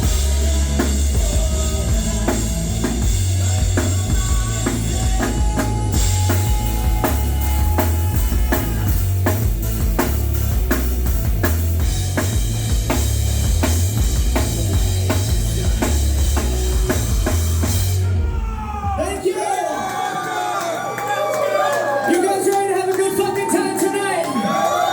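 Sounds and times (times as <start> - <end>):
bass drum and snare hits: 0.0 - 18.1
heavy bass line: 0.0 - 19.3
band playing live: 0.0 - 19.6.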